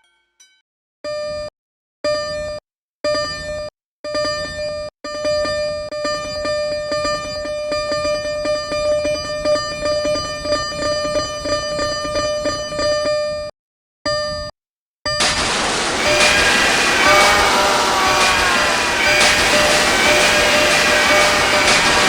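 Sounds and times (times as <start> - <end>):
level-crossing alarm ringing: 15.5 - 22.0.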